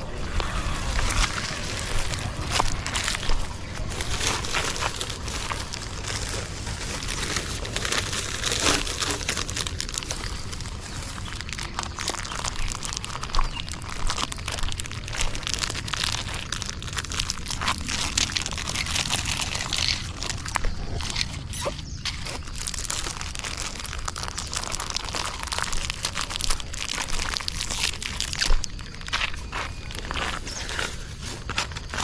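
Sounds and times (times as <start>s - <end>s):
dogs crunching dry biscuits: 0.0s - 32.0s.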